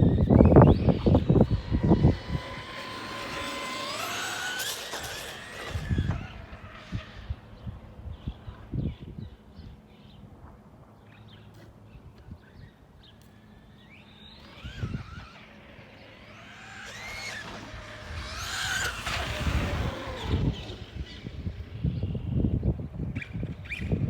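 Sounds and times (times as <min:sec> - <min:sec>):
electric motor whining: 0:00.0 - 0:09.2, 0:12.6 - 0:24.0
wind rumbling on microphone: 0:00.0 - 0:10.6, 0:14.4 - 0:15.6, 0:16.3 - 0:24.0.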